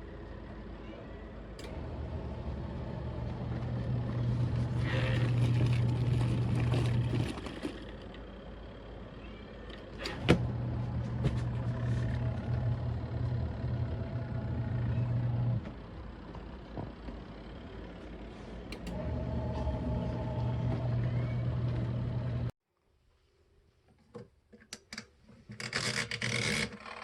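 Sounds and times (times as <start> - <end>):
washing machine motor humming: 0.0 - 22.6.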